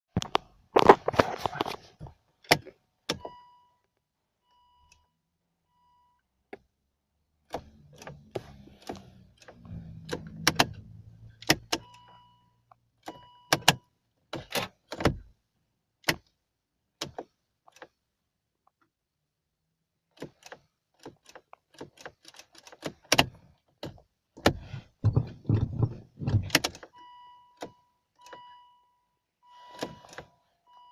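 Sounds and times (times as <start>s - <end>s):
ignition and relay clicks: 7.5s - 10.8s.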